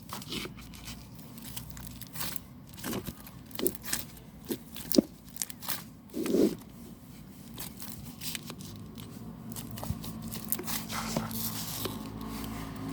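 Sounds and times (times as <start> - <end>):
packaging crinkling and tearing: 0.0 - 6.7, 7.5 - 12.3.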